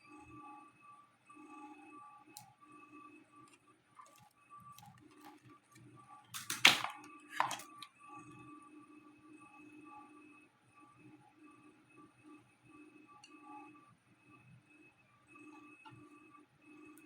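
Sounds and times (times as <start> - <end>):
laptop being handled clicks: 6.4 - 7.9.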